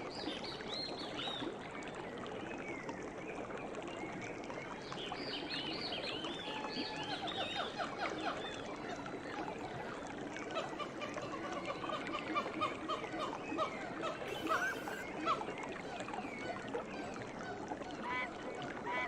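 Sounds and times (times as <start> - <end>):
running water: 0.0 - 19.0
birds chirping and singing: 14.3 - 15.0.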